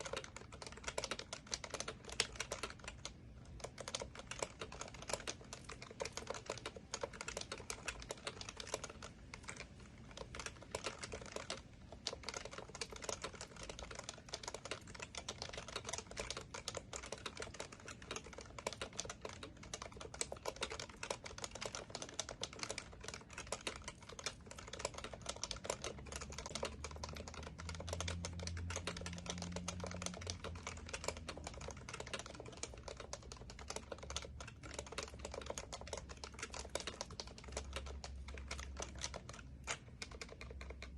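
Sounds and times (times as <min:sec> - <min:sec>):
fast keyboard typing: 0:00.0 - 0:40.9.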